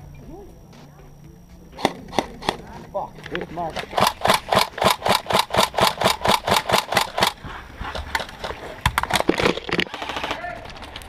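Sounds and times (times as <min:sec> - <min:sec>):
airsoft gun firing: 0:03.8 - 0:07.4, 0:08.2 - 0:10.6.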